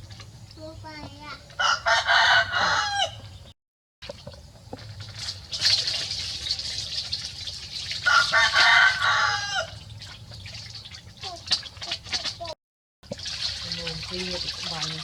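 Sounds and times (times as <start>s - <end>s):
rooster crowing: 1.6s - 3.3s, 8.0s - 9.8s
splashing water: 4.0s - 15.0s.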